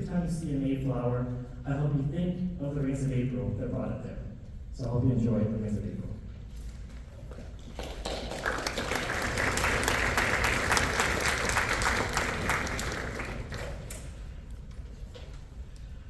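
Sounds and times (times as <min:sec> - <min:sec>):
audience applauding: 0:07.6 - 0:14.1.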